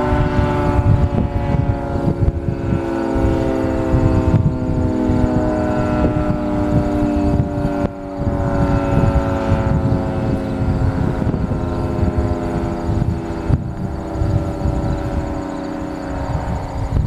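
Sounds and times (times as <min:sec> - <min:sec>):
warning siren chord: 0:00.0 - 0:17.0
wind buffeting microphone: 0:00.0 - 0:17.0.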